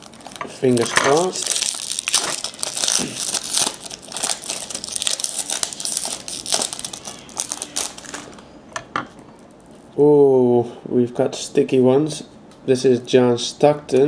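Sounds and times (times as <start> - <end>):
wrapper tearing and crinkling: 0.0 - 8.4.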